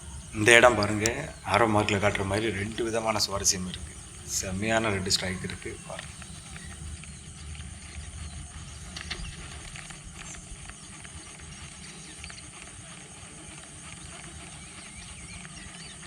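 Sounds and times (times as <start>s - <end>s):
light clicks: 0.0s - 6.9s
high insect drone: 0.0s - 16.0s
outdoor background noise: 0.0s - 16.0s.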